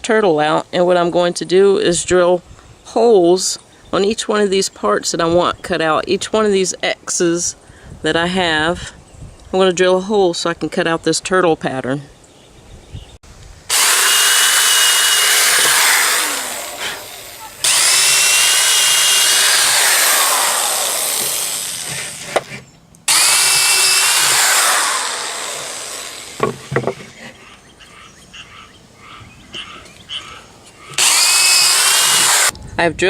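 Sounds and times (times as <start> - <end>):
power drill whining: 13.7 - 26.7, 31.0 - 32.5.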